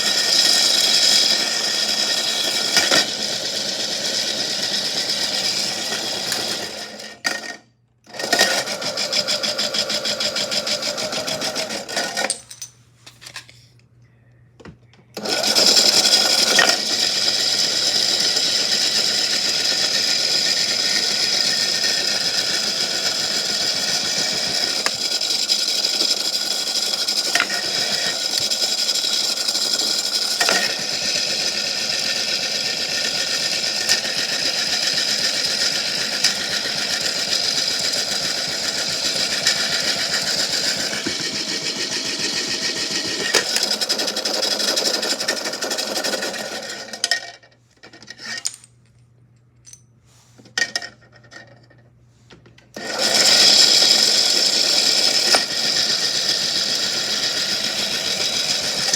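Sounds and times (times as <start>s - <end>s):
toy washing machine motor: 0.0s - 12.4s, 15.2s - 47.5s, 52.8s - 58.9s.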